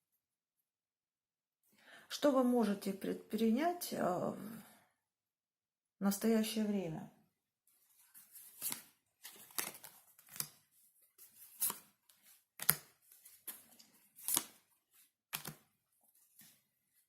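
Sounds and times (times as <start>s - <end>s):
cards slapping and sliding on table: 8.2s - 14.7s, 15.3s - 15.7s.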